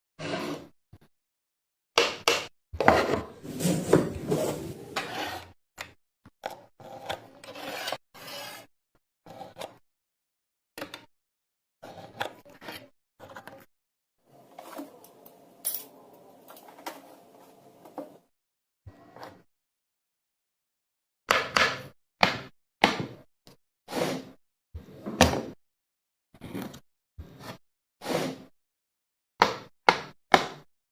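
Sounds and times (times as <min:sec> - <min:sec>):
wood scraping and rasping: 0:02.8 - 0:05.6.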